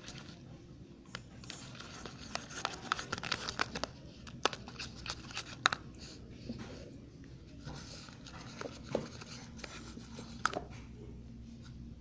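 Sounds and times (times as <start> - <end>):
slime being stirred in a container: 1.4 - 6.2.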